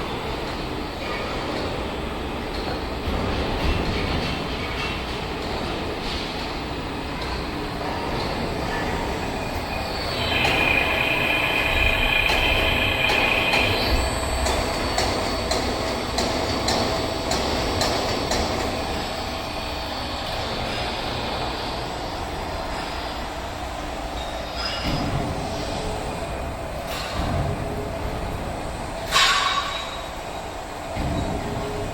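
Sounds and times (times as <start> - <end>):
welding rotator mechanical rumble: 9.2 - 17.2
high metallic squeal: 9.5 - 14.8.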